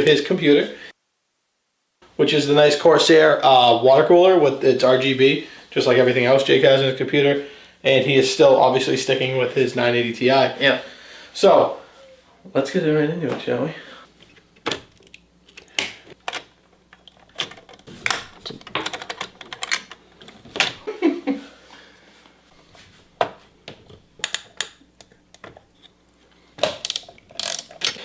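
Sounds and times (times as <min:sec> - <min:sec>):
computer parts clicking and clacking: 0:14.6 - 0:20.0.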